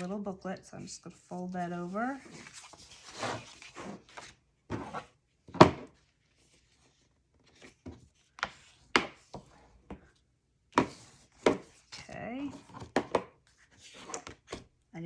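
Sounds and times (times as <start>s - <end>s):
card stock tapping and folding: 7.6s - 14.6s.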